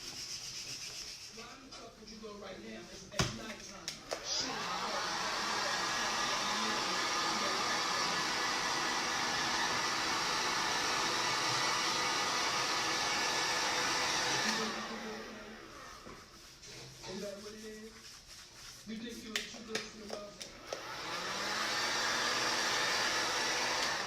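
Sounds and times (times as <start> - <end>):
hot-air blower running: 4.1 - 16.3, 20.1 - 24.0.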